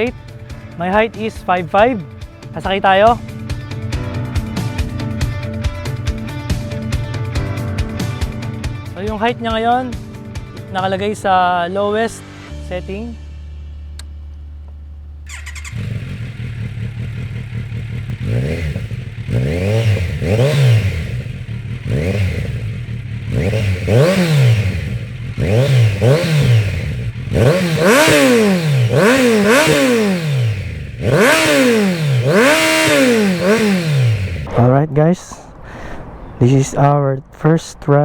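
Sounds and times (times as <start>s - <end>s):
motorcycle engine revving: 15.2s - 34.6s.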